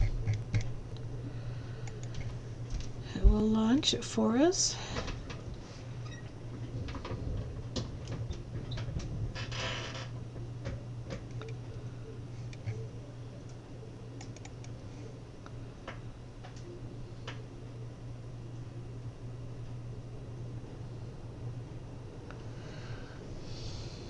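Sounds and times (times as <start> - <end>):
faint clicks and ticks: 0.0 - 1.1, 1.8 - 2.9, 10.0 - 13.6, 14.2 - 14.8
steady low hum: 0.0 - 24.0.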